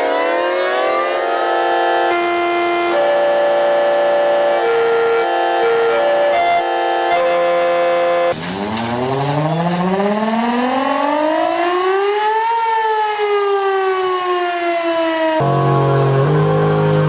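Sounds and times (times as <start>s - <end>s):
several held tones: 1.3s - 8.3s.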